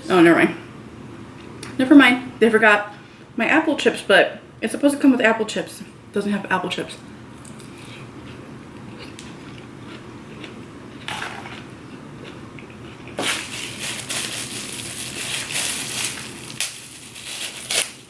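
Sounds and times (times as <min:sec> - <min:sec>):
crunchy food being chewed: 0:07.4 - 0:18.0.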